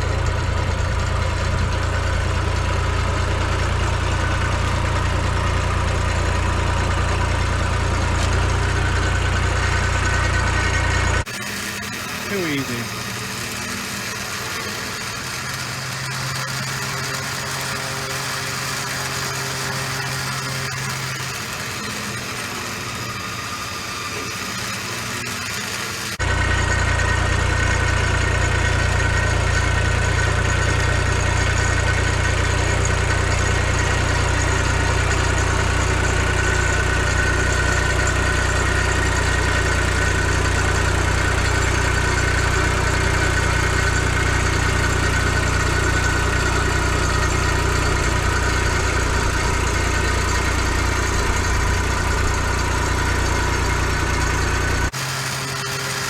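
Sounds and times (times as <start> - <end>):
vehicle engine idling: 0.0 - 56.0
high steady whine: 9.5 - 30.4, 41.6 - 56.0.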